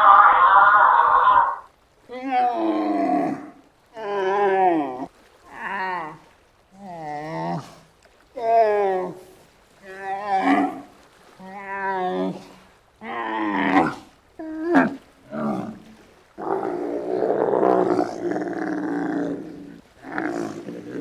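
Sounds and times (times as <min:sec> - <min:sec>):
animal calls with wavering pitch: 0:00.0 - 0:01.7
rasping roar-like animal call: 0:00.0 - 0:03.6, 0:09.9 - 0:11.0, 0:11.6 - 0:21.0.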